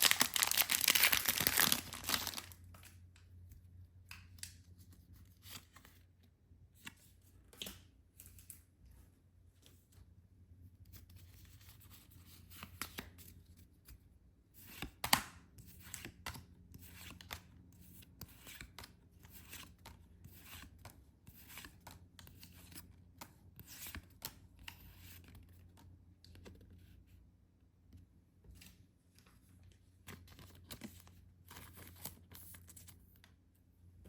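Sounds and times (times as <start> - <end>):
packaging rustling and tearing: 0.0 - 2.6
packaging snapping: 0.0 - 2.6.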